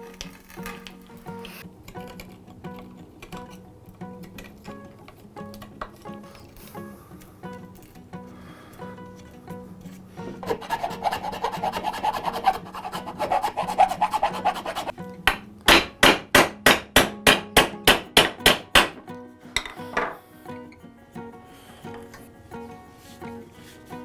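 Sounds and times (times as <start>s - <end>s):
heavy tool strokes on wood: 9.9s - 14.9s
fast light scraping strokes: 10.4s - 14.9s.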